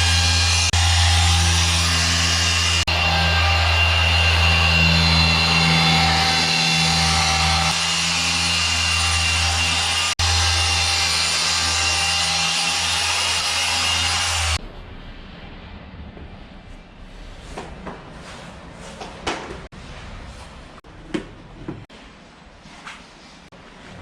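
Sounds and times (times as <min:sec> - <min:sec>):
handheld power tool running: 0:00.0 - 0:14.6.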